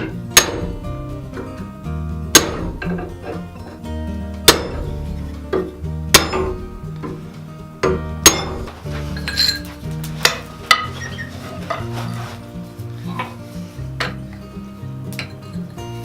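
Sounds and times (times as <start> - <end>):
hammer striking metal: 0.0 - 0.8, 2.3 - 3.4, 4.4 - 10.9
background music with bass line: 0.0 - 16.0.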